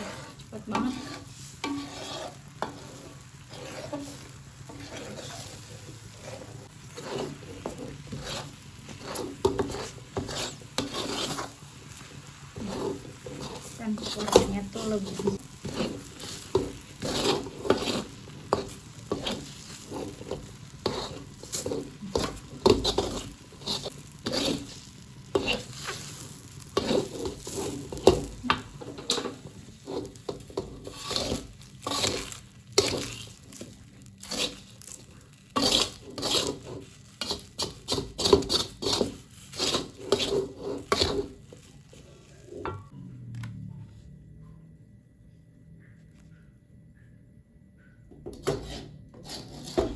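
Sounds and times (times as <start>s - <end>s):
utensil stirring sticky dough: 0.0s - 42.9s, 48.4s - 49.9s.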